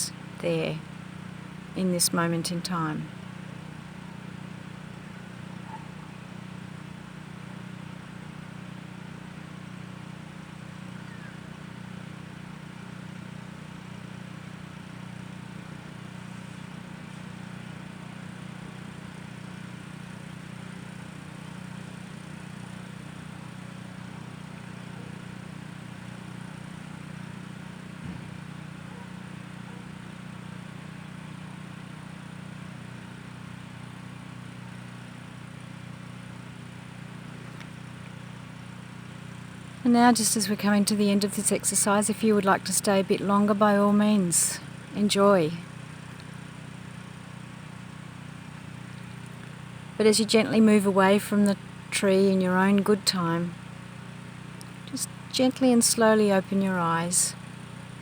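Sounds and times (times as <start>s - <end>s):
distant machinery humming: 0.0s - 8.1s, 10.1s - 13.4s, 37.4s - 58.0s
faint outdoor background: 0.0s - 58.0s.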